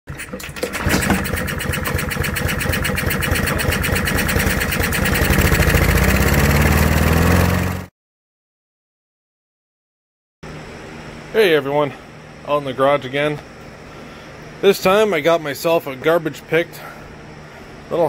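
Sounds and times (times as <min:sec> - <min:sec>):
lawnmower engine running: 0:00.1 - 0:07.9.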